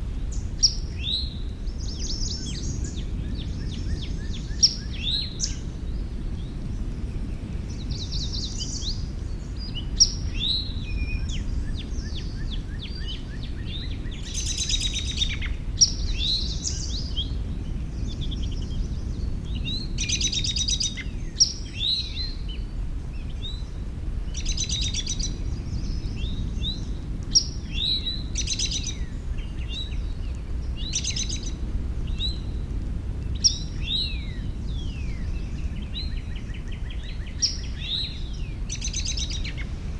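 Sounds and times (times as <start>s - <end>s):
songbirds singing: 0.0s - 39.9s
steady low rumble: 0.0s - 39.9s.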